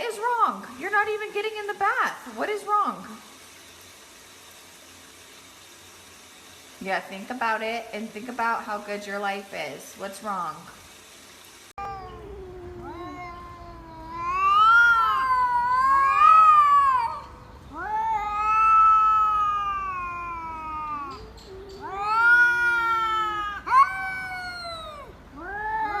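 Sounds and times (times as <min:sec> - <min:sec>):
cat yowling: 0:11.8 - 0:26.0.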